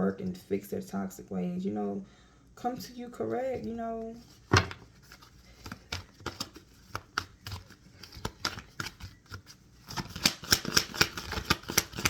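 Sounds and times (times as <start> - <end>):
cards being shuffled: 3.5 - 12.0.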